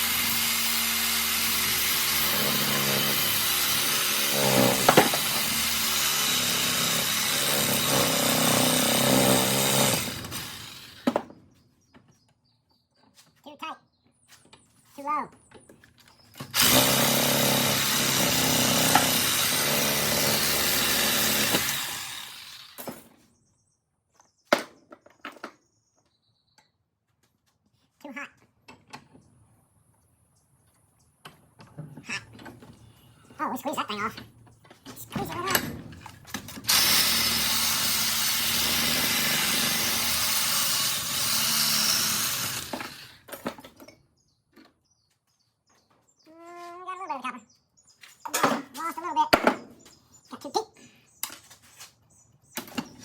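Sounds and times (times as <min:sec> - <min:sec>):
power saw cutting metal: 0:00.0 - 0:11.2, 0:16.4 - 0:23.1, 0:36.3 - 0:43.4.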